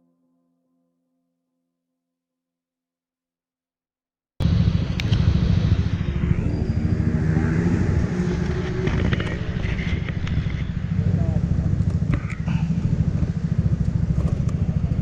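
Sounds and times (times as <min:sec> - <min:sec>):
heavy low rumble: 0:04.4 - 0:15.0
scooter engine running: 0:04.4 - 0:15.0.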